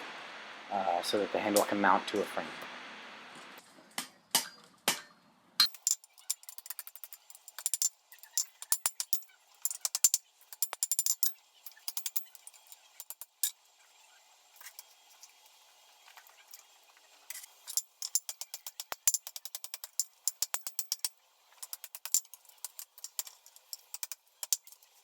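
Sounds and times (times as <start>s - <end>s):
hammer striking hot steel on anvil: 4.0s - 11.2s.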